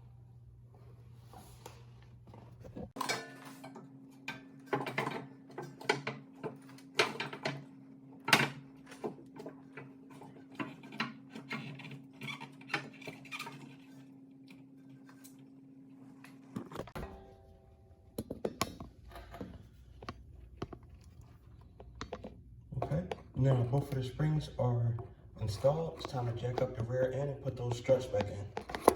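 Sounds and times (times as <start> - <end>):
steady low hum: 14.1 - 28.9.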